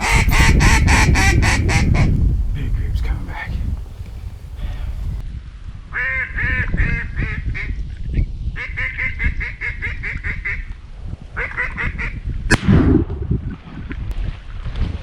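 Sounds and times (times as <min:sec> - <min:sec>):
duck quacking: 0:00.0 - 0:02.2.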